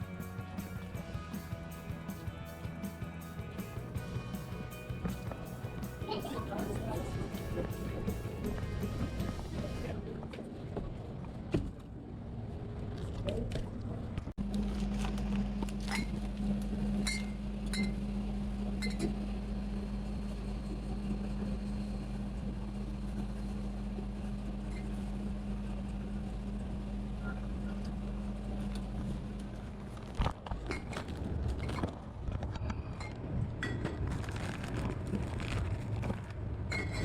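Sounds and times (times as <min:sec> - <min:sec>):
steady low hum: 0:14.1 - 0:30.2.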